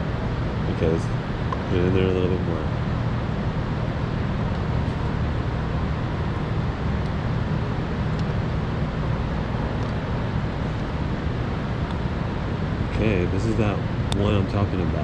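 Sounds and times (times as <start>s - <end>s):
low rumbling background noise: 0.0s - 15.0s.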